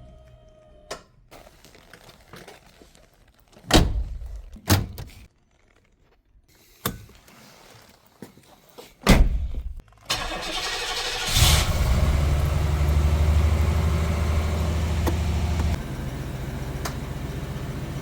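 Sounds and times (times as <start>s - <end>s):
car engine cranking and idling: 10.1s - 18.0s.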